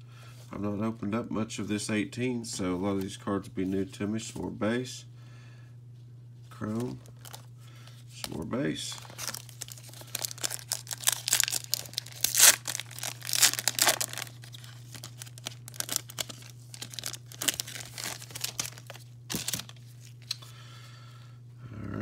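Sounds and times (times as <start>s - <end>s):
low electrical hum: 0.0s - 22.0s
cards rustling and scraping: 6.6s - 20.5s.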